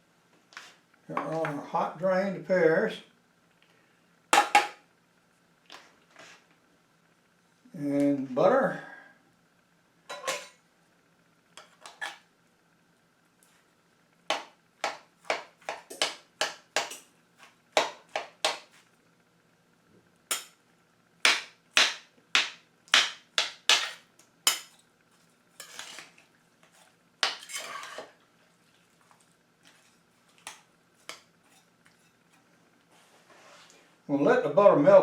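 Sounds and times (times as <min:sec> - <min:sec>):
utensil scraping bowl: 0:11.6 - 0:12.2, 0:23.7 - 0:28.2.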